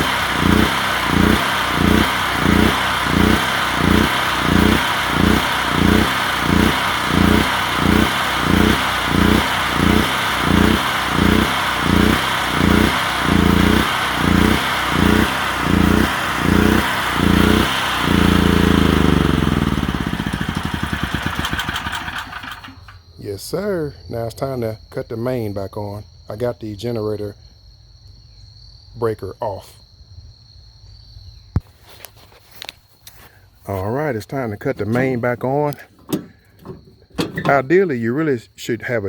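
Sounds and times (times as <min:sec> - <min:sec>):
generator engine surging: 0:00.0 - 0:23.0, 0:34.7 - 0:37.8.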